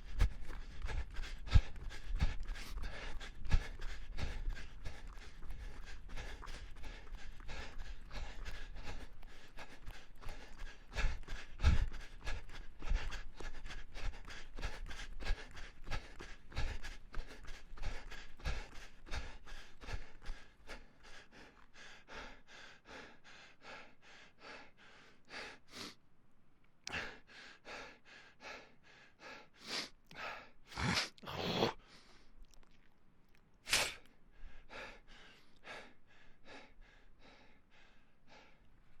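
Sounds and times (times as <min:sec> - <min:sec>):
person panting hard: 0:00.0 - 0:26.0, 0:26.9 - 0:32.2, 0:33.7 - 0:39.0.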